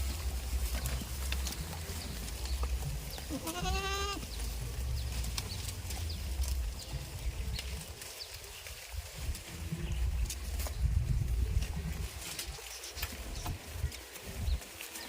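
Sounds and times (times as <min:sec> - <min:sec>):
low rumble: 0:00.0 - 0:12.2
goat bleating: 0:00.8 - 0:04.7.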